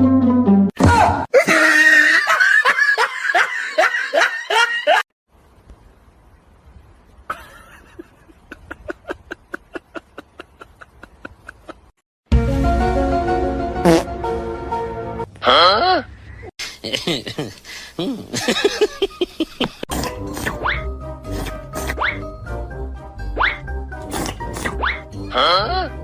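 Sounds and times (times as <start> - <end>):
person laughing: 1.3 - 5.0, 7.3 - 11.9, 16.6 - 19.9.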